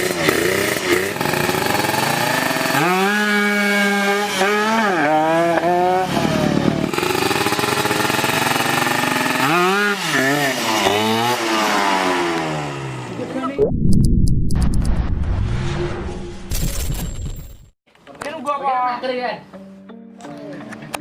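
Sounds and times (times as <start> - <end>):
motorcycle engine revving: 0.0 - 13.6.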